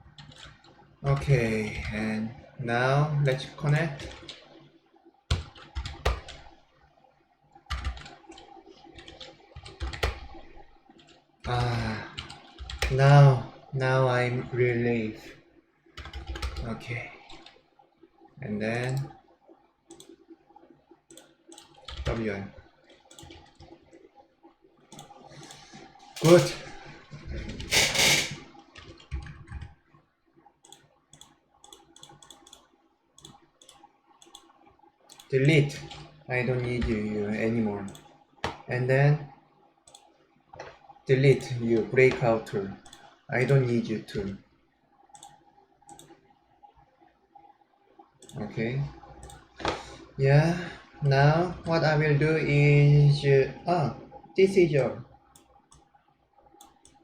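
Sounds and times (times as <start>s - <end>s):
faint keyboard and mouse clicks: 0.0s - 2.0s, 5.3s - 6.6s, 7.6s - 13.1s, 16.0s - 17.6s, 18.7s - 19.2s, 19.8s - 20.2s, 21.0s - 24.0s, 24.8s - 30.0s, 30.6s - 38.8s, 39.8s - 44.4s, 45.1s - 46.3s, 48.2s - 50.0s, 54.4s - 55.9s, 56.5s - 57.0s.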